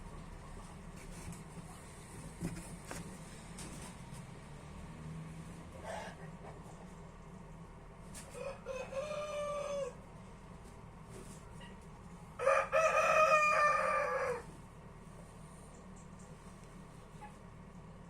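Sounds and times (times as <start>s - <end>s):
low steady hum: 0.0s - 18.0s
rooster crowing: 8.3s - 10.0s, 12.4s - 14.6s.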